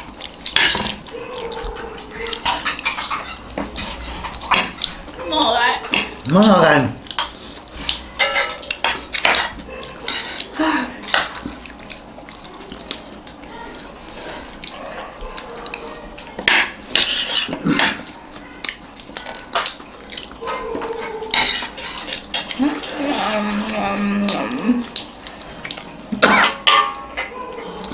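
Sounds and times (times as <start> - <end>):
spoons clinking on plates: 0.5 - 4.9, 7.1 - 10.5, 24.9 - 27.9.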